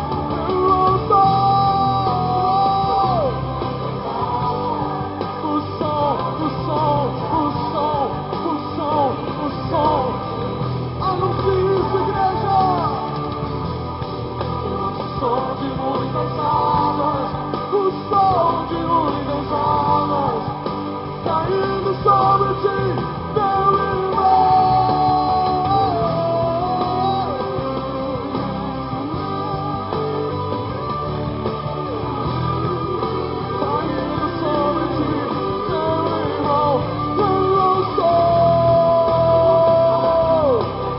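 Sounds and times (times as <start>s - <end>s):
rock band playing: 0.0s - 40.9s.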